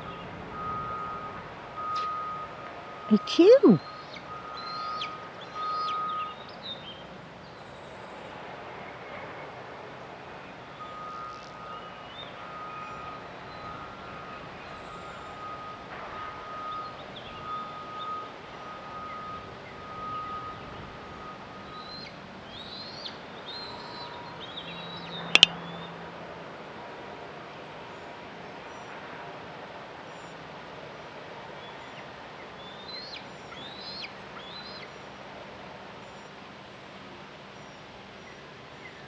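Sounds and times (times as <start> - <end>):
steady outdoor hiss: 2.5 - 3.8, 9.8 - 12.5, 29.7 - 39.0.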